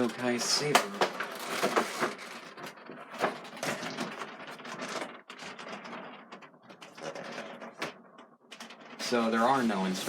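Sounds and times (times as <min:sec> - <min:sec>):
cardboard and plastic packaging rustling: 0:00.0 - 0:06.1.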